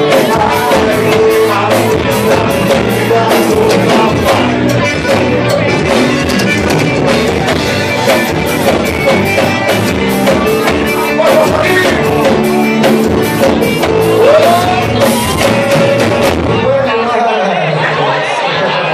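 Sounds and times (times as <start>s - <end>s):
person singing: 0.0s - 8.2s, 9.7s - 16.2s
drum kit beat: 0.0s - 16.8s
live country band playing: 0.0s - 18.9s.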